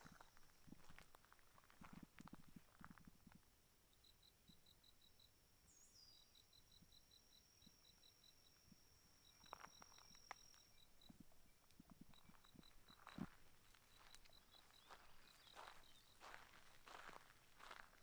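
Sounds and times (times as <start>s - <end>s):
faint insects chirping: 0.0s - 18.0s
high-pitched insect trill: 4.0s - 17.9s
footsteps: 12.9s - 18.0s.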